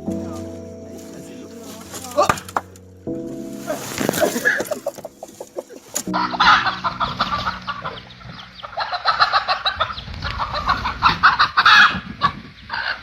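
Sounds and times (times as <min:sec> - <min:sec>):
chickens clucking: 0:03.9 - 0:13.0.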